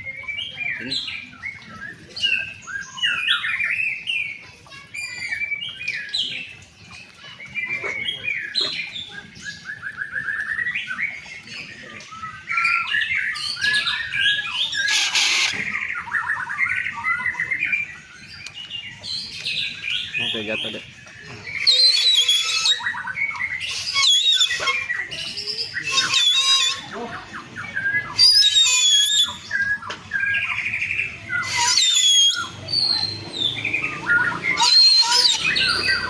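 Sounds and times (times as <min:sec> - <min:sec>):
bird singing chirps and trills: 0:00.0 - 0:36.0
harsh noisy burst: 0:14.9 - 0:15.7.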